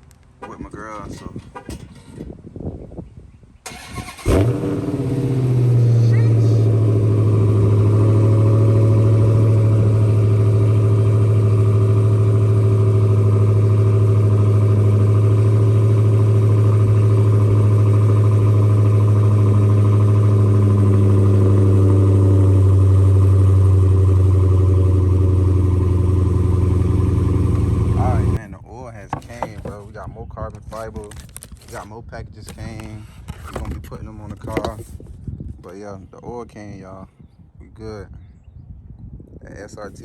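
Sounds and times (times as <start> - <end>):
car engine idling: 3.7 - 28.4.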